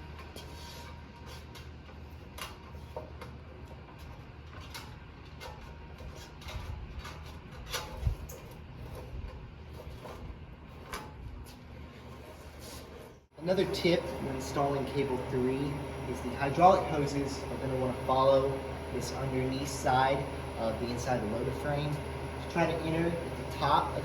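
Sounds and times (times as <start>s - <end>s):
steady low hum: 0.0s - 24.0s
cable clicks and scrapes: 0.1s - 13.2s.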